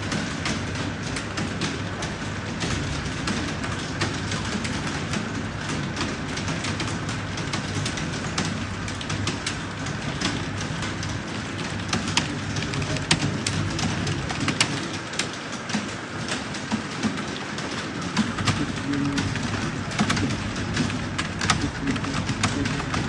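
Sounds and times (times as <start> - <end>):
steady background hum: 0.0 - 23.0
keyboard typing clicks: 9.1 - 16.4, 17.0 - 23.0.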